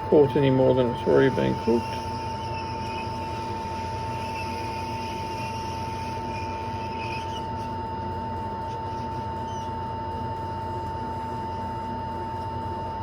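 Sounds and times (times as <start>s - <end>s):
hot air blower rushing: 0.0s - 7.8s
steady whine: 0.0s - 13.0s.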